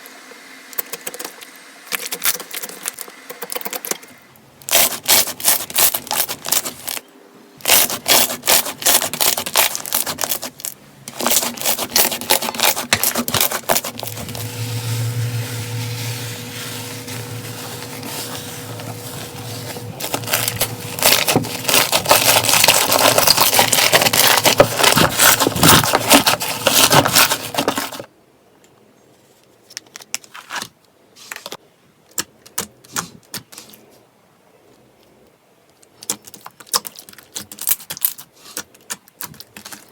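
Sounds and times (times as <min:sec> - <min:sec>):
slime crackling and popping: 0:07.6 - 0:27.4
low hum: 0:13.4 - 0:25.9.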